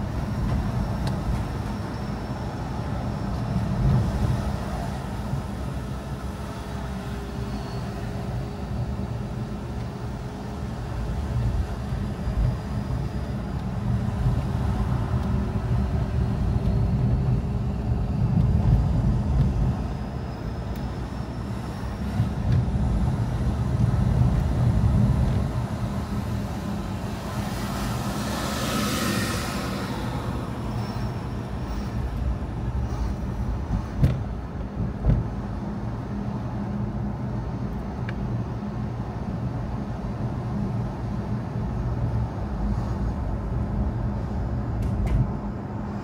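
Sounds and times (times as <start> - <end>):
car engine and road rumble: 0.0 - 46.0
engine whine: 0.0 - 46.0
rush of noise: 0.0 - 46.0.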